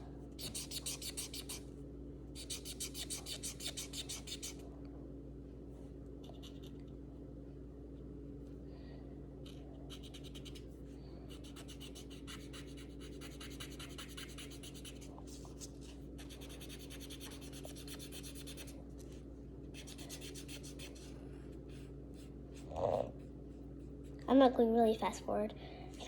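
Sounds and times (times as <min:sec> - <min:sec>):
scribbling on paper: 0:00.4 - 0:01.6, 0:02.4 - 0:04.6, 0:09.9 - 0:10.7, 0:11.3 - 0:18.8, 0:19.7 - 0:22.7.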